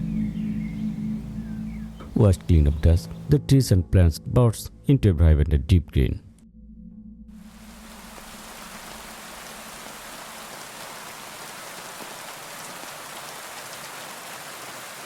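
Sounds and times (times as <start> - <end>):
steady rain falling: 7.4 - 15.0.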